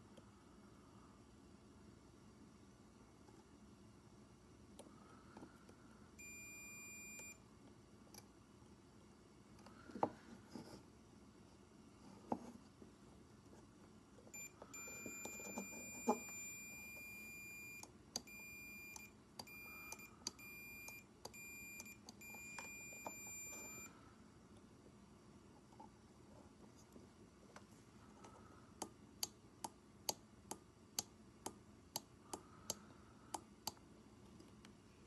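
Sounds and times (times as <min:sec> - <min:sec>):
electronic beep: 0:14.4 - 0:23.9.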